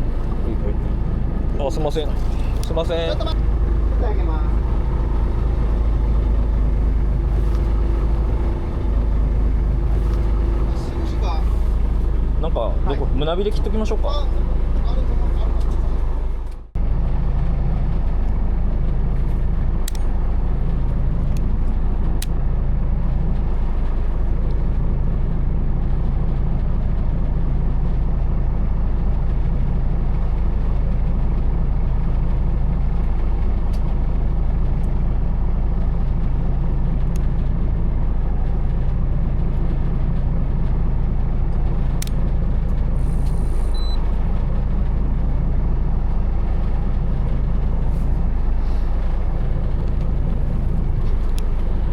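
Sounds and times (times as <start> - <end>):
boat engine droning: 0.0 - 51.9
short high beep: 43.7 - 44.0.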